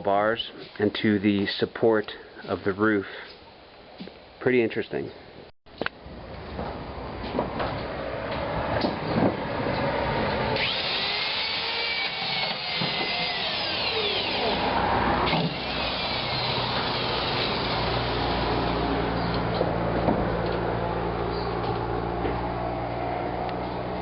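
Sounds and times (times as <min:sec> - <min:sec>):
power tool whining: 0:10.3 - 0:19.7.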